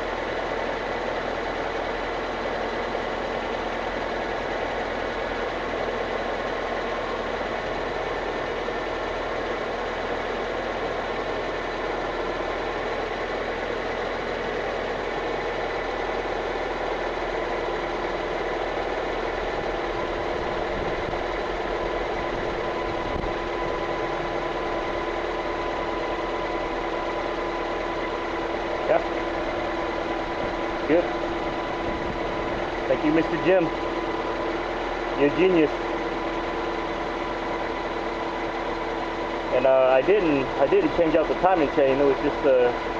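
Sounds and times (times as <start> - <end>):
car engine idling: 0.0 - 42.9.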